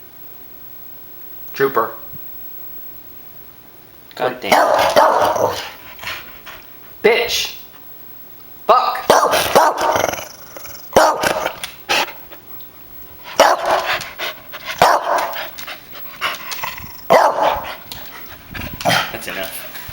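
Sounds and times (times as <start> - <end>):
dog barking: 4.4 - 5.8, 9.1 - 10.3, 10.9 - 12.2, 13.3 - 15.5, 17.1 - 17.8.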